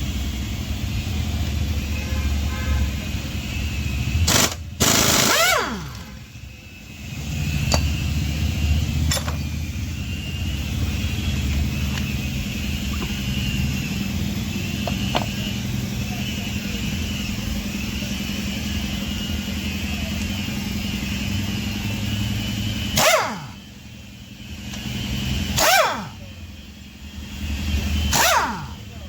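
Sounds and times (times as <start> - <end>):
pneumatic impact wrench rattling: 4.1 - 6.3, 7.1 - 9.7, 10.9 - 15.9, 20.3 - 23.7, 24.4 - 26.3, 27.3 - 29.0.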